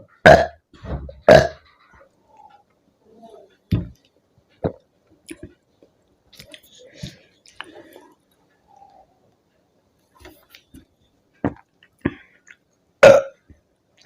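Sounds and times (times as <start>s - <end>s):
loud burp: 0.0s - 0.6s, 1.3s - 1.6s, 13.0s - 13.4s.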